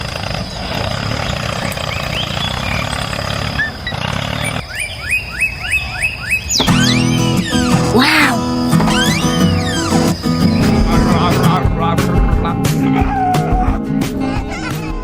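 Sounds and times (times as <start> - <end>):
birds chirping: 0.0 - 14.5
bird rising chirp: 0.2 - 11.6.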